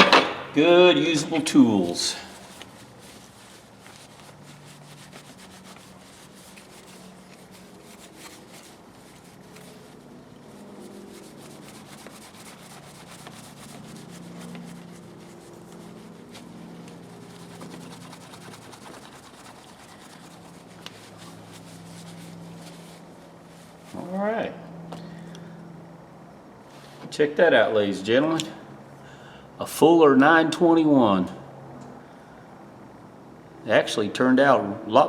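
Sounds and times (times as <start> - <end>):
cloth rubbing on metal: 0.9 - 24.2.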